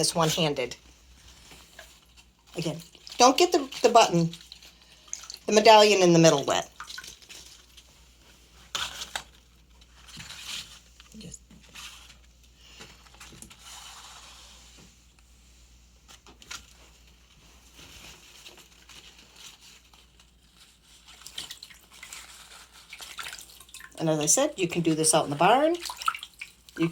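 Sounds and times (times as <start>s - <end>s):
ribbon rustling: 6.9s - 23.6s.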